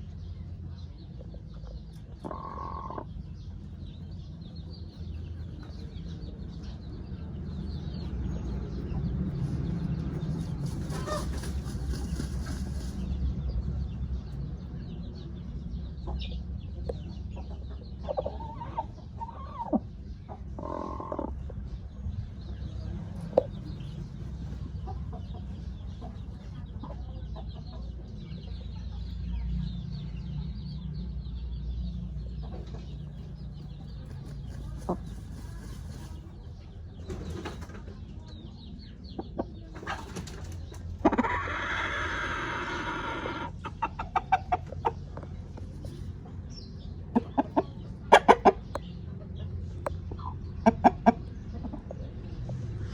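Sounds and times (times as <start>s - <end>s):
chickens clucking: 0.0s - 52.9s.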